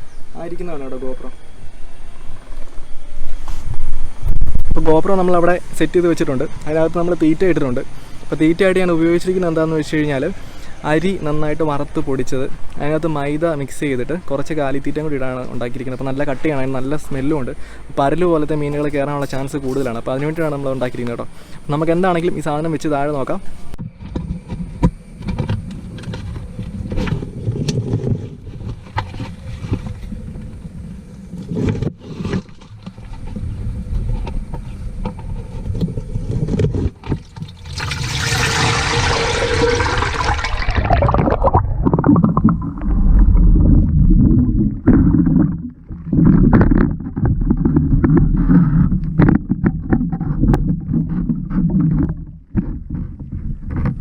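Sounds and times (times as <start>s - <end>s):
muffled underwater rumble: 23.5s - 37.0s, 38.4s - 54.0s
water sloshing against camera: 31.4s - 54.0s
hissing bubbling rush: 37.2s - 45.8s.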